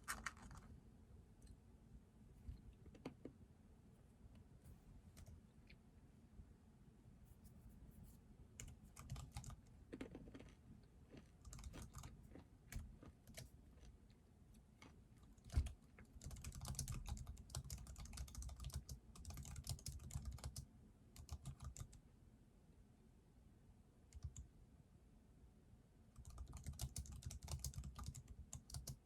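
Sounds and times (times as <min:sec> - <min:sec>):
typing on keyboard: 0:00.0 - 0:00.7, 0:08.6 - 0:10.5, 0:11.2 - 0:13.9, 0:15.3 - 0:22.0, 0:24.1 - 0:24.5, 0:26.2 - 0:29.0.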